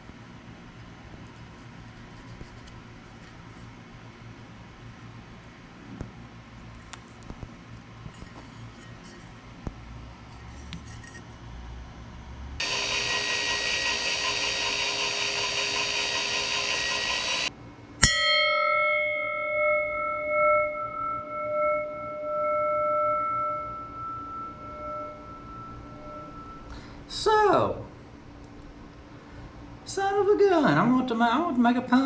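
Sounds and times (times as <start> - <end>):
power tool running: 12.6 - 17.5
bell-like strike on steel: 12.6 - 27.2.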